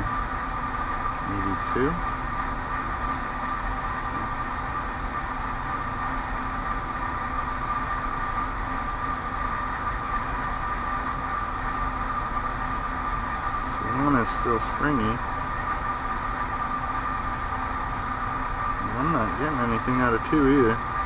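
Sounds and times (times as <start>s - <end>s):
background hum and hiss: 0.0s - 21.0s.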